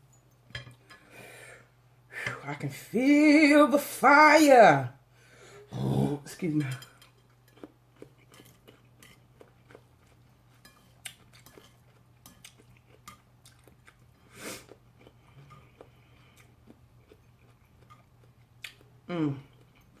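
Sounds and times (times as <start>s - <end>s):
person chewing noodles: 7.0s - 20.0s.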